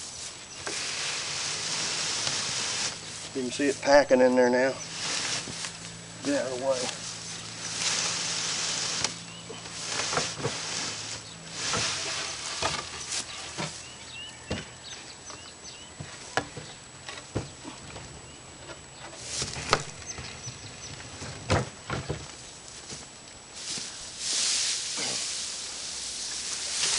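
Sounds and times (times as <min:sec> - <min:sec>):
dry hay rustling and crackling: 0:00.0 - 0:14.5, 0:19.1 - 0:21.4, 0:22.2 - 0:26.9.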